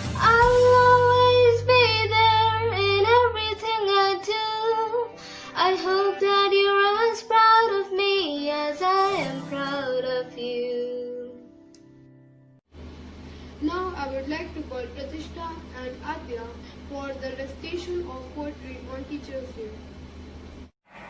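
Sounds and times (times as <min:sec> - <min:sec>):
child singing: 0:00.2 - 0:11.4.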